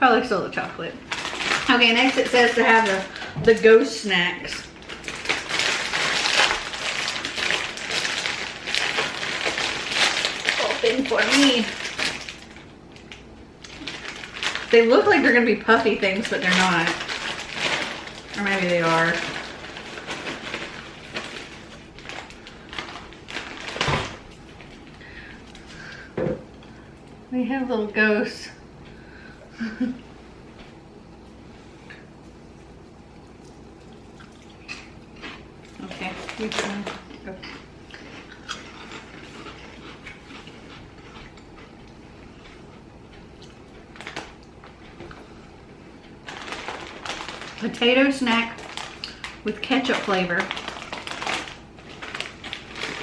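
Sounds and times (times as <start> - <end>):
plastic snack bag crackling: 0.5 - 26.1, 34.7 - 41.2, 43.5 - 45.2, 46.1 - 53.0.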